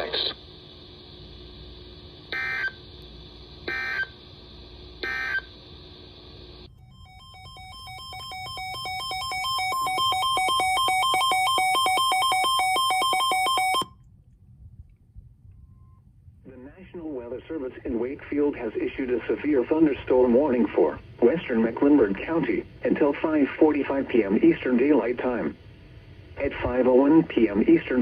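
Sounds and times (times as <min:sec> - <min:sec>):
radio hiss: 0:00.0 - 0:01.4, 0:16.5 - 0:28.0
pulsing two-tone electronic beeping: 0:06.7 - 0:14.0
screechy data bursts: 0:07.0 - 0:13.8.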